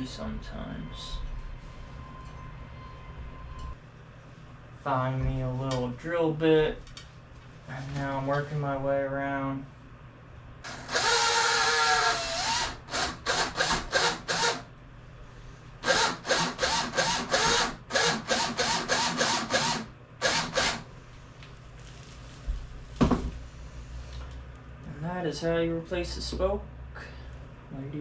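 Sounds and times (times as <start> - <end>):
power drill spinning in bursts: 10.7 - 14.6, 15.8 - 20.9.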